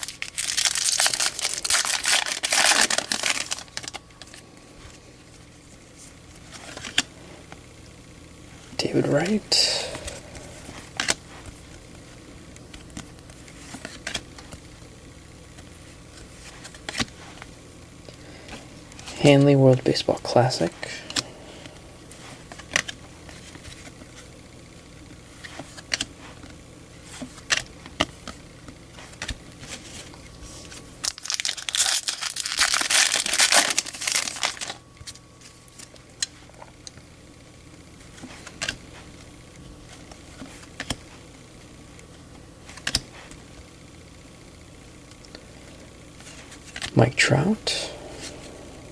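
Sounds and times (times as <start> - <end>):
wrapper crinkling and tearing: 0.0 - 4.4, 29.1 - 36.0
cards flicking and snapping: 25.4 - 30.2, 38.0 - 39.2, 40.0 - 41.1, 42.6 - 43.4.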